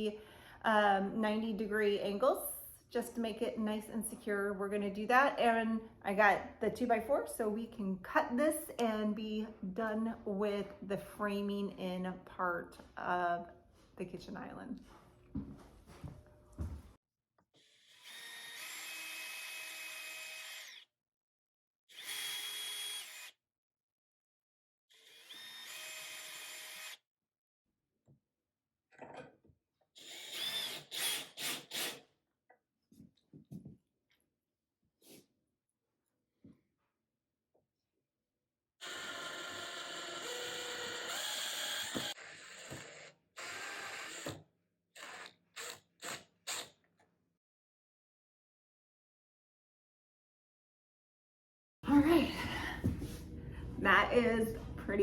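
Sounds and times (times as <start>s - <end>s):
electric drill driving screws: 17.6s - 20.9s, 21.9s - 23.4s, 24.9s - 27.0s, 30.0s - 32.0s, 38.8s - 44.4s, 45.0s - 46.8s.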